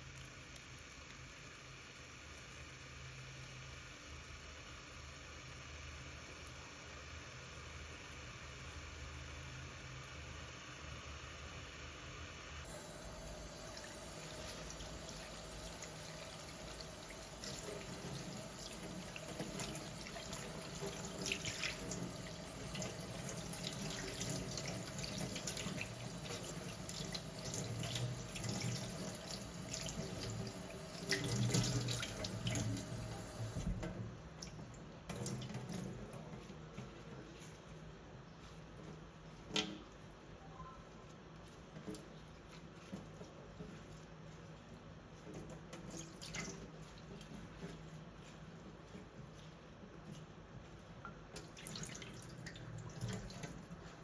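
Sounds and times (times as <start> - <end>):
tap water running into sink: 12.6 - 37.2, 51.0 - 54.0.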